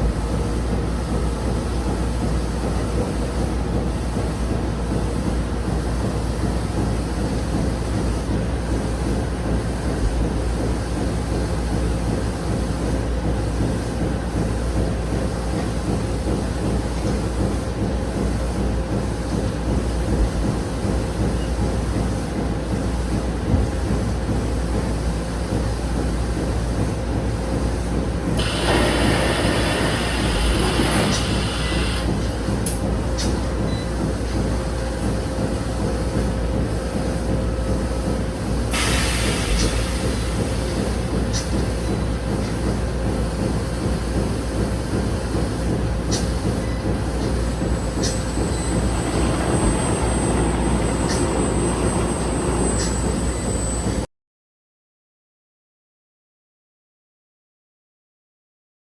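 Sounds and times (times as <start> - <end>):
machinery rumble and hum: 0.0 - 54.1
machinery hiss: 28.4 - 33.4, 38.6 - 42.6, 45.8 - 54.0.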